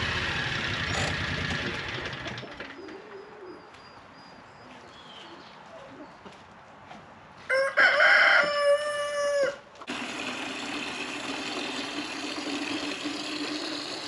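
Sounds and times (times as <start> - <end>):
rooster crowing: 7.5 - 9.6.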